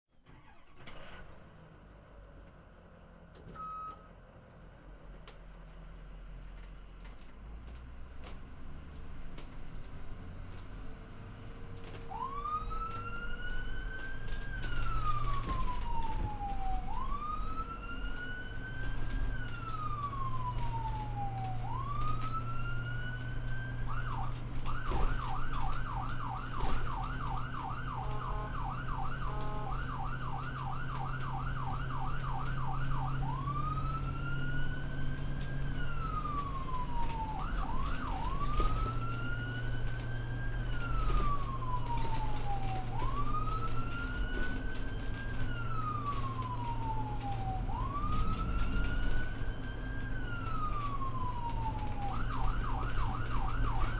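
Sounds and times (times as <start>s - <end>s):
ambulance siren wailing and yelping: 0.3s - 1.2s, 11.9s - 53.9s.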